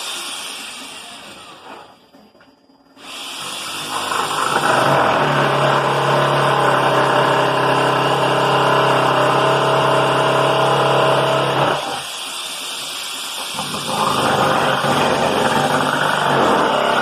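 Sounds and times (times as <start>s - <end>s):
electric drill motor running: 3.0s - 17.0s.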